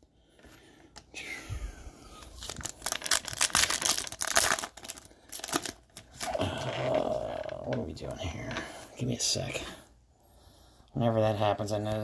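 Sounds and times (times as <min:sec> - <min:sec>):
wrapper crinkling and tearing: 0:02.1 - 0:07.9.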